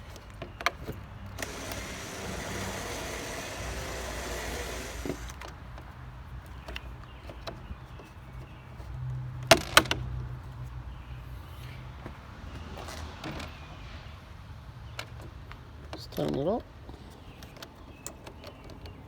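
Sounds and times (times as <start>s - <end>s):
power drill drilling plastic: 1.3s - 5.5s
sharp clicks: 1.4s - 5.6s.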